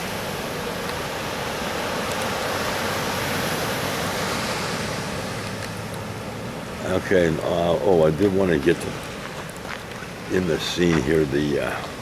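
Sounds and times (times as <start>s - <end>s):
ocean surf washing ashore: 0.0s - 12.0s.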